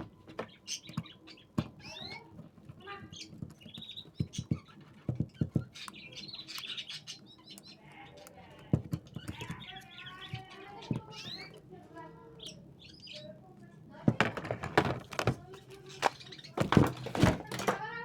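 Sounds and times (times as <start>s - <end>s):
small birds chirping: 0.0s - 18.0s
handling clicks and knocks: 8.6s - 11.2s, 14.1s - 18.0s.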